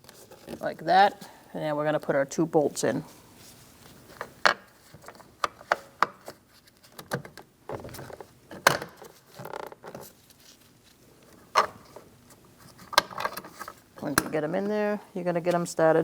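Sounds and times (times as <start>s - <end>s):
rustling: 2.9s - 5.4s, 9.0s - 14.7s.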